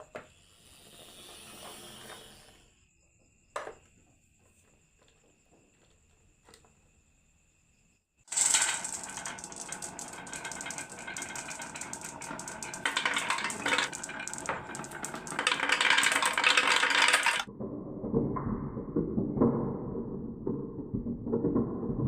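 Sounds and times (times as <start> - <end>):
marbles rattling down wooden run: 8.3 - 17.5.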